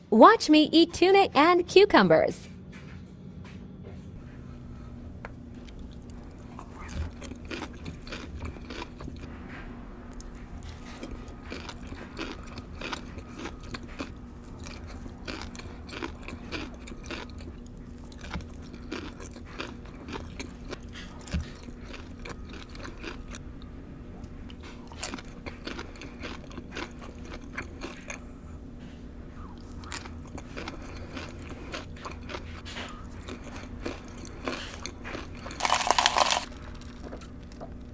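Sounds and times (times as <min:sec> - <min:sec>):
wet chewing: 0:04.2 - 0:23.4, 0:24.4 - 0:37.9
crisp crunching bites: 0:05.6 - 0:09.0, 0:10.7 - 0:17.4, 0:33.3 - 0:37.5.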